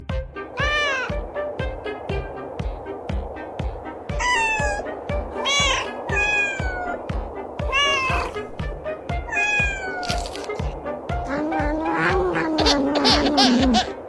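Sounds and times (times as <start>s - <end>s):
background music with beat: 0.0s - 6.4s
cats yowling and meowing: 0.5s - 2.8s, 3.7s - 14.0s.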